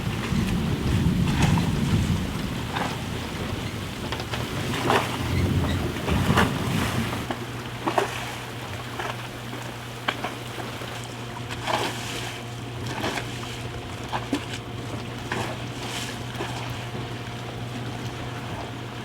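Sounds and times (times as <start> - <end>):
storm wind: 0.0 - 7.3
choppy water: 0.0 - 19.0
water knocks and slaps on boat: 0.0 - 19.0.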